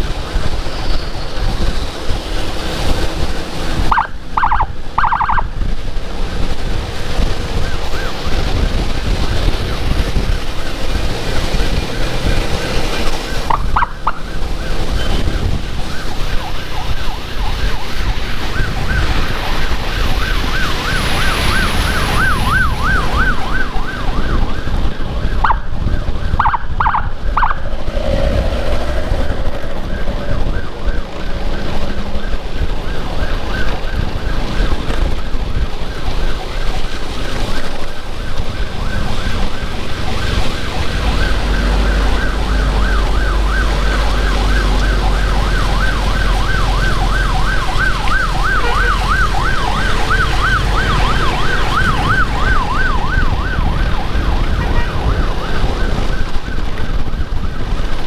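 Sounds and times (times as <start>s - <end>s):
emergency siren warbling yelp: 0.0s - 58.0s
wind and engine rumble: 0.0s - 58.0s.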